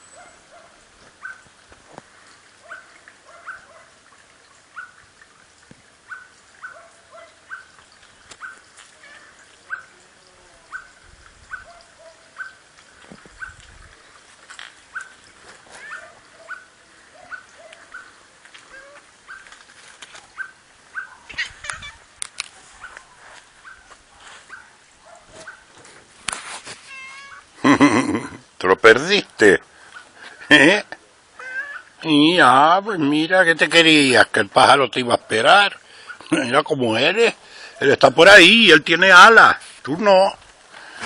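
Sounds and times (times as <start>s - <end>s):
animal short high calls: 15.8s - 16.7s, 18.7s - 19.4s, 20.4s - 22.1s, 26.9s - 27.5s, 31.4s - 32.0s.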